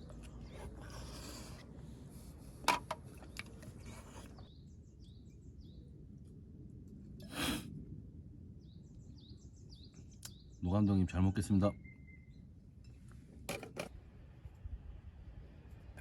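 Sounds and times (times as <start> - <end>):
small birds chirping: 8.6 - 13.0.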